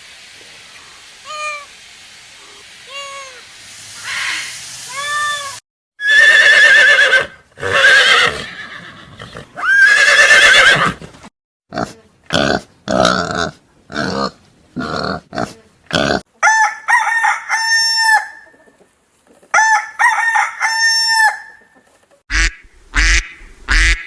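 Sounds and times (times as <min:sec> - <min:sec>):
horse whinnying: 0:06.0 - 0:11.1.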